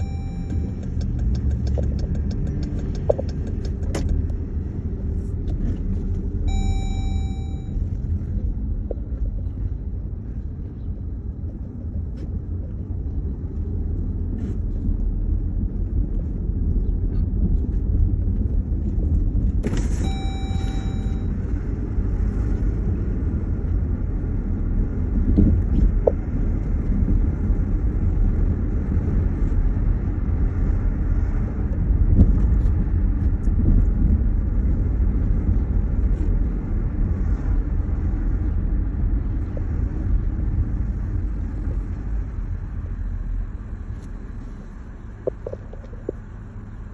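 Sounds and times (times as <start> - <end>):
short high beep: 0.0 - 0.9, 6.5 - 7.9, 20.0 - 21.4
vehicle rumble: 0.0 - 46.9.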